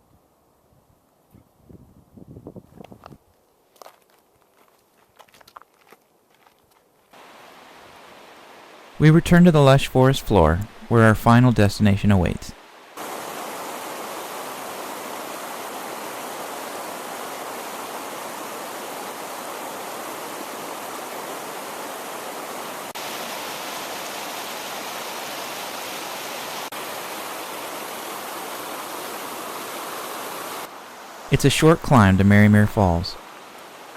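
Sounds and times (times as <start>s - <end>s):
creek water rushing: 7.2s - 33.9s.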